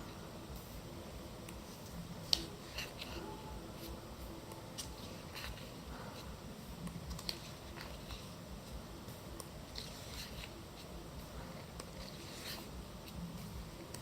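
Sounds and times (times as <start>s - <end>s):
paper and card handling: 1.7s - 4.1s, 4.7s - 6.3s, 7.1s - 8.8s, 9.4s - 13.2s.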